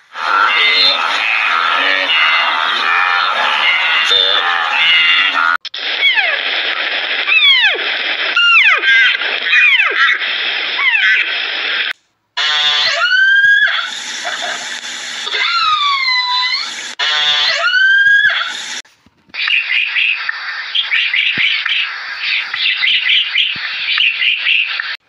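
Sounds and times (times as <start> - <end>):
high-pitched animal squeals: 0.1 - 6.4, 7.3 - 7.8, 8.4 - 10.2, 12.4 - 14.6, 15.2 - 18.6.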